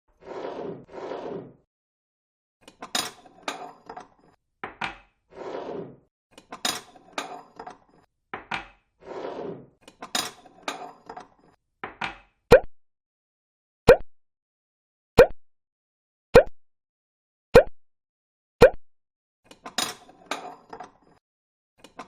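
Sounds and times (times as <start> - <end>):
dishes and cutlery clinking: 2.6 - 4.3, 9.8 - 11.6.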